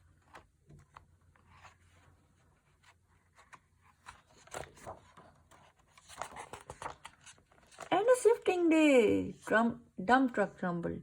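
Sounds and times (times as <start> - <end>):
book pages rustling: 0.0 - 8.5.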